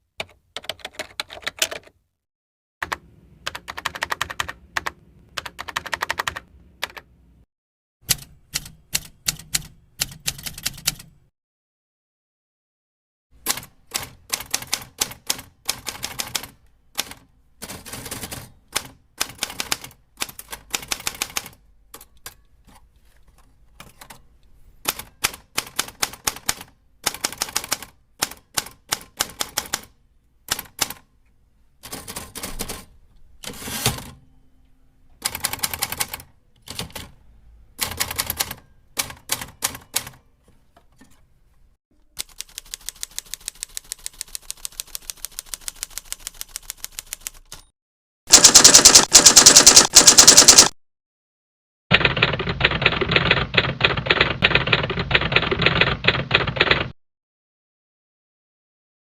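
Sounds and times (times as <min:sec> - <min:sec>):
typewriter keystroke clatter: 0:42.2 - 0:47.7, 0:48.3 - 0:50.8, 0:51.9 - 0:57.0
typewriter clunk: 0:48.3 - 0:50.7.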